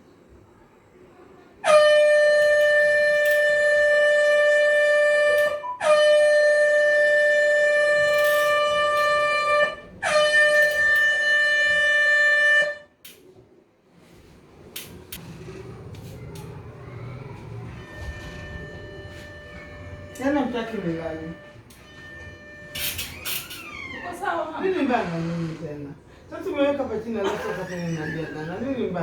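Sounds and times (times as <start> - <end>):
air horn blasts: 1.6 - 13.0, 17.7 - 23.1.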